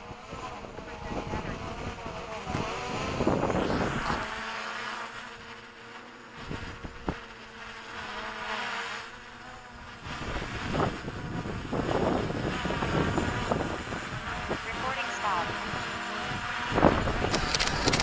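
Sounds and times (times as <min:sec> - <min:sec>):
wind gusts on microphone: 0:00.0 - 0:04.4, 0:09.8 - 0:18.0
drone propellers buzzing: 0:00.0 - 0:18.0
single click: 0:17.3 - 0:18.0.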